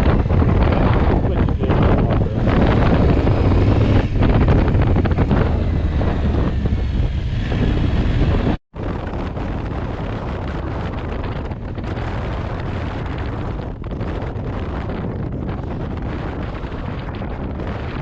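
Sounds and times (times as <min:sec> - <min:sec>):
motorcycle engine running: 0:00.0 - 0:18.0
wind buffeting microphone: 0:00.0 - 0:18.0.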